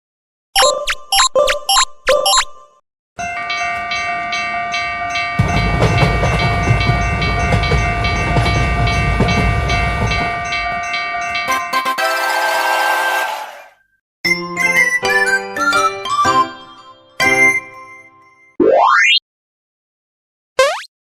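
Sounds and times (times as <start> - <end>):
train wheel clatter: 5.0 - 12.0
train horn chord: 11.7 - 13.7.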